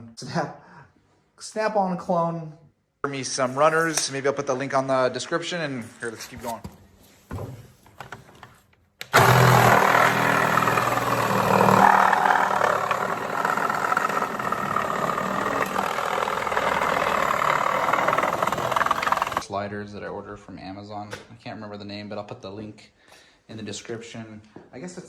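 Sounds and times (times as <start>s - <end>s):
power tool motor whirring: 9.1s - 19.4s.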